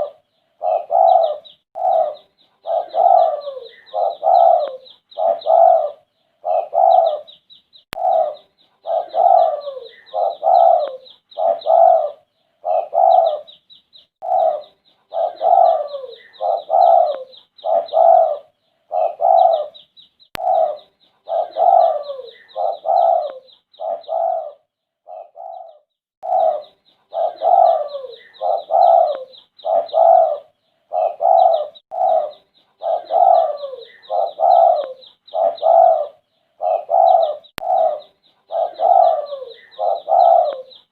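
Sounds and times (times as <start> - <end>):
dove cooing: 0.0 - 7.4, 8.0 - 13.6, 14.2 - 19.8, 20.4 - 40.9.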